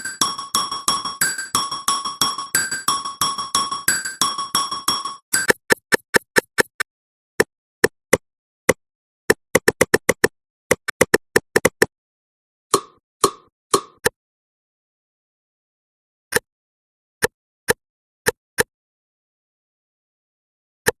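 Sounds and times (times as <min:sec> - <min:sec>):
metronome ticking: 0:00.0 - 0:06.8, 0:12.7 - 0:14.1.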